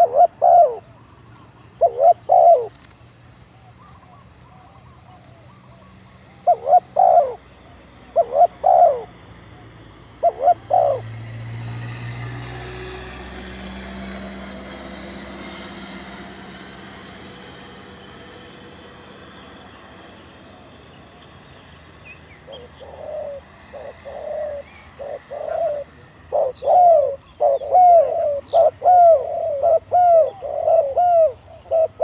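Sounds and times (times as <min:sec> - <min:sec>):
dove cooing: 0:00.0 - 0:01.1, 0:01.8 - 0:02.9, 0:03.6 - 0:11.7, 0:22.4 - 0:32.0
engine-like rumble: 0:00.0 - 0:32.0.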